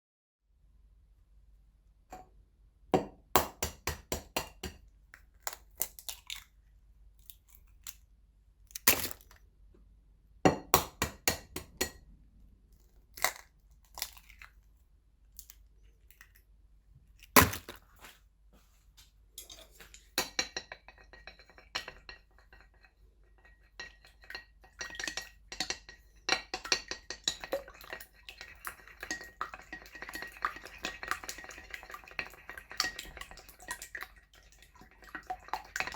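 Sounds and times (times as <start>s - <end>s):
egg knocking on bowl rim: 3.0s - 4.8s, 10.5s - 12.0s
egg cracking open: 5.2s - 6.6s, 13.1s - 14.6s
utensil beating egg in bowl: 20.2s - 35.9s.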